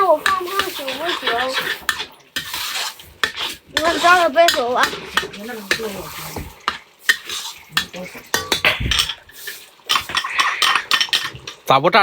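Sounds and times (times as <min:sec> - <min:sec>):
person speaking: 0:00.0 - 0:01.9, 0:03.7 - 0:06.6, 0:07.7 - 0:08.3
kitchen utensils clattering: 0:00.0 - 0:12.0.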